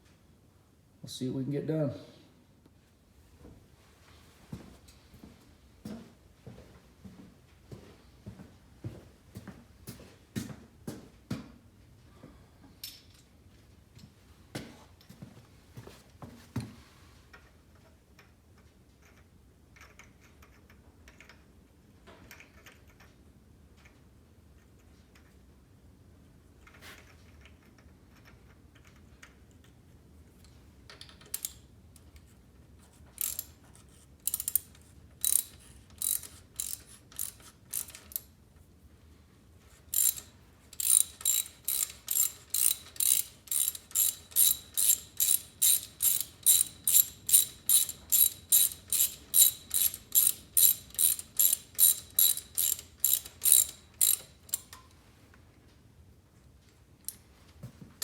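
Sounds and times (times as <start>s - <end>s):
socket ratchet clicking: 30.9s - 31.6s, 33.2s - 33.5s, 34.2s - 38.3s, 39.9s - 54.8s.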